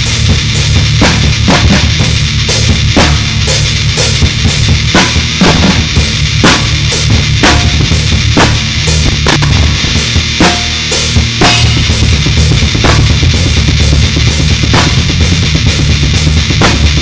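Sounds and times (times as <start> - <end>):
drum kit beat: 0.0 - 17.0
loud low bass: 0.0 - 17.0.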